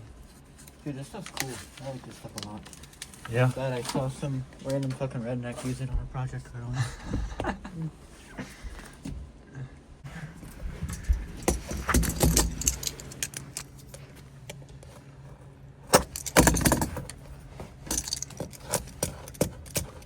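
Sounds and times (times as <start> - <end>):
crinkling foil sheets handled: 0.6 - 5.1.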